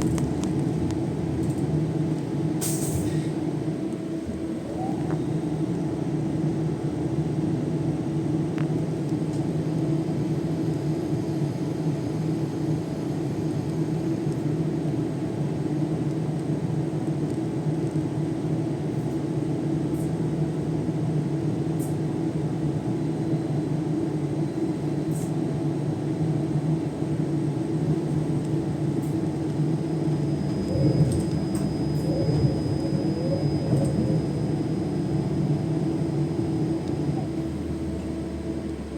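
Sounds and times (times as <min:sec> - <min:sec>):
bus interior running drone: 0:00.0 - 0:38.9.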